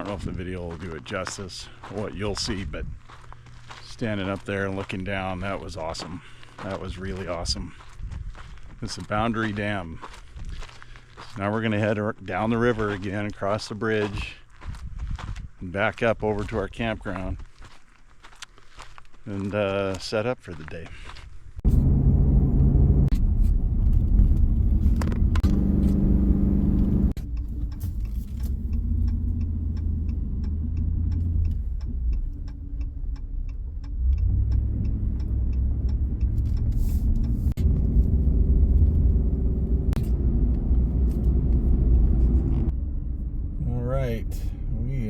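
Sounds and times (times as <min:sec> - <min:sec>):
car engine and road rumble: 0:00.0 - 0:13.0, 0:21.5 - 0:45.0
light regular ticking: 0:27.2 - 0:37.6.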